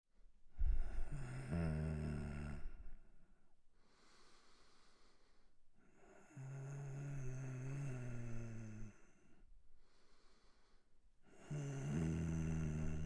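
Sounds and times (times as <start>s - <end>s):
man's laboured breathing: 3.8s - 6.2s, 9.1s - 11.0s.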